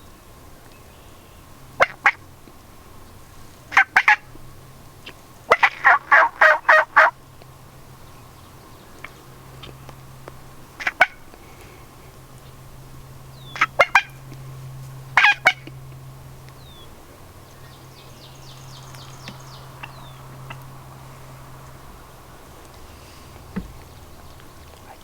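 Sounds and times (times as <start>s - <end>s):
turkey gobbling: 1.8s - 2.2s, 3.7s - 4.4s, 5.0s - 7.2s, 10.8s - 11.3s, 13.4s - 14.3s, 15.1s - 15.9s, 16.6s - 24.9s.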